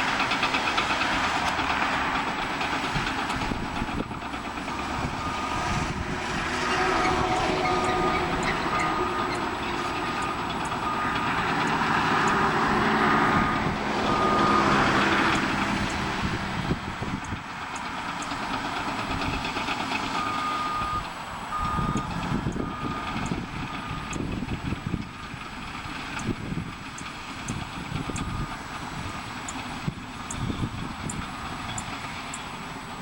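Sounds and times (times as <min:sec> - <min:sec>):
diesel engine noise: 0:00.0 - 0:33.0
backup alarm beeping: 0:06.8 - 0:11.4, 0:20.2 - 0:24.2.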